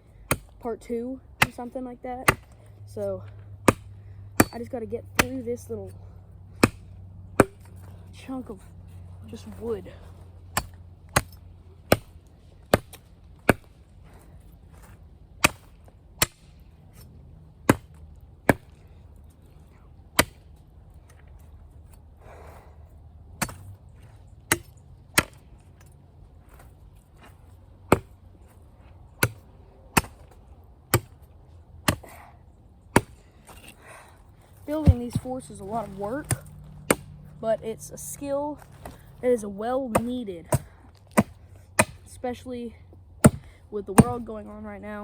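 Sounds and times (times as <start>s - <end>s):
blade chopping green wood: 0.3s - 0.6s, 1.4s - 2.6s, 3.6s - 5.7s, 6.5s - 8.4s, 10.5s - 13.8s, 14.8s - 16.6s, 17.6s - 18.8s, 20.1s - 20.5s, 24.5s - 25.4s, 27.9s - 28.2s, 29.2s - 31.2s, 31.8s - 32.2s, 32.9s - 33.6s, 34.7s - 37.2s, 39.8s - 42.2s, 43.2s - 44.3s.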